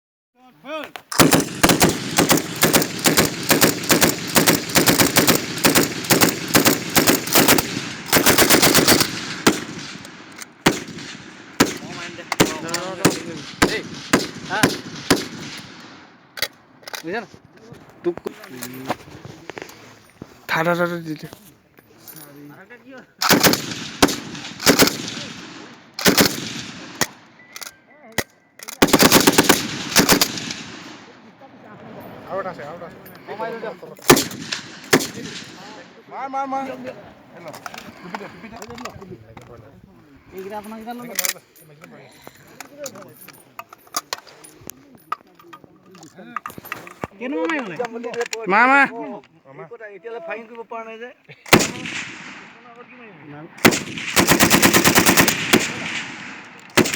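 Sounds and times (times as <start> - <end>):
machine gun firing rapidly: 1.1 - 10.0, 10.6 - 15.6, 23.2 - 25.4, 26.0 - 26.7, 28.8 - 30.7, 34.1 - 35.3, 51.5 - 52.0, 53.6 - 56.9
single gunshots: 1.1 - 16.1, 23.2 - 27.2, 28.8 - 31.1, 34.0 - 35.8, 51.5 - 52.6, 53.6 - 56.9.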